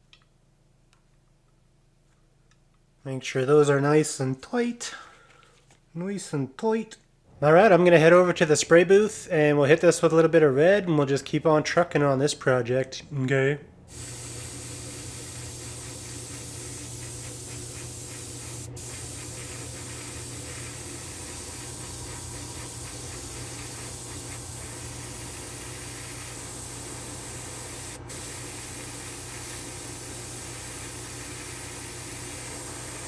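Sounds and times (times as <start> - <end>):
airbrush spraying hiss: 13.9 - 33.0.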